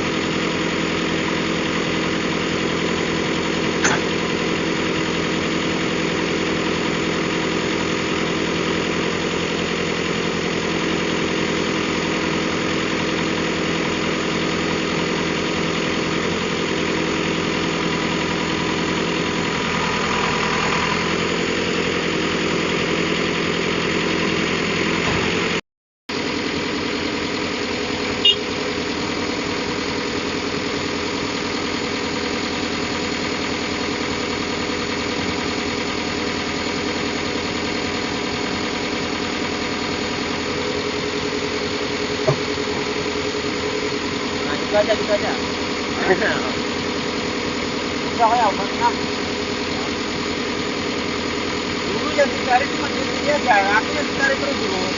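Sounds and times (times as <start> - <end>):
diesel engine idling: 0.0 - 54.9.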